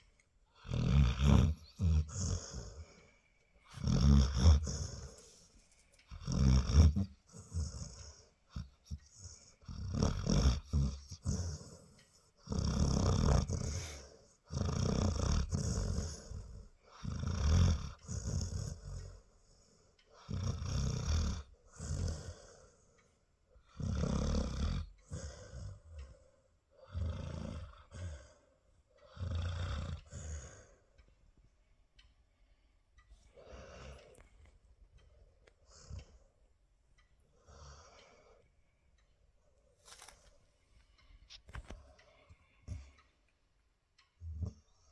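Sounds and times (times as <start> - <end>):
dog snoring: 0.5 - 5.5, 6.1 - 22.9, 23.6 - 30.8, 33.3 - 34.4, 44.2 - 44.9.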